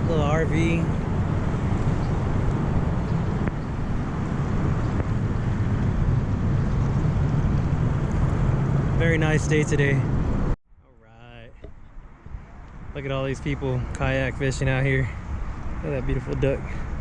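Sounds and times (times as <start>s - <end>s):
wind rumble on microphone: 0.0s - 10.6s.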